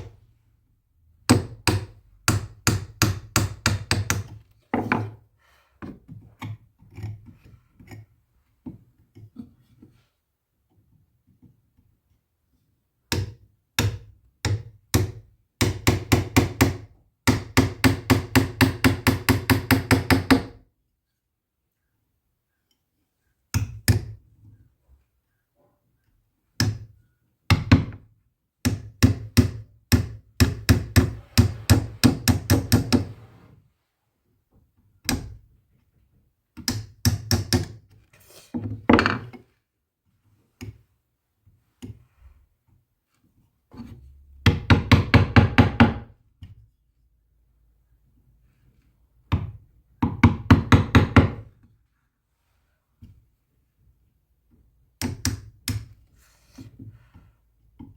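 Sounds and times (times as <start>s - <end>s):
hammering on wood: 1.3s - 5.1s, 13.1s - 20.6s, 28.6s - 33.2s, 44.4s - 46.1s, 49.3s - 51.4s.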